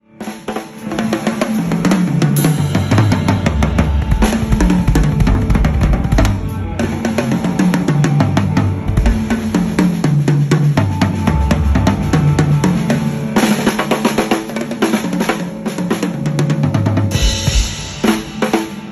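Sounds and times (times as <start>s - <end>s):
drum fills on toms: 0.2s - 18.9s
bass drum hits: 2.6s - 7.0s.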